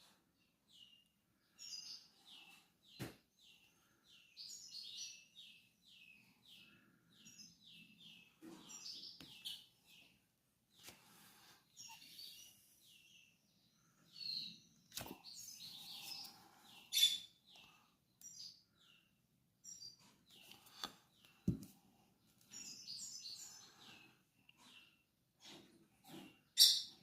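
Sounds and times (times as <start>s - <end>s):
finch chirping: 11.4s - 21.4s, 22.5s - 27.0s.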